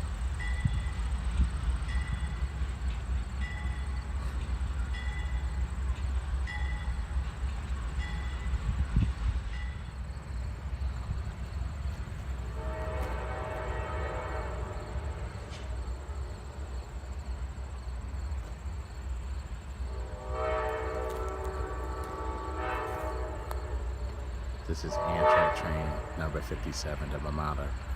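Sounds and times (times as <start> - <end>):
locomotive horn blasts: 12.4 - 15.8, 19.9 - 27.2.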